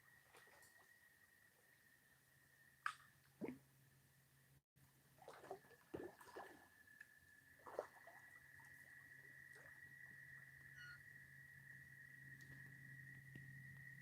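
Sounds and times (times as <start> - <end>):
faint steady whine: 5.8 - 14.0.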